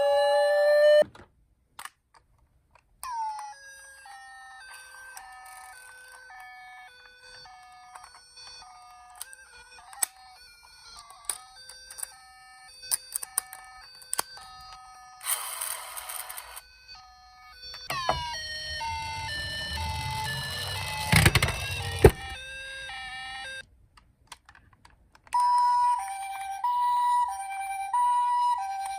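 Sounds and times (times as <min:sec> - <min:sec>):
louder siren with falling sweep: 0:00.0 - 0:01.0, 0:17.9 - 0:23.6
toy two-tone siren: 0:00.0 - 0:01.0, 0:03.0 - 0:23.6, 0:25.3 - 0:28.9.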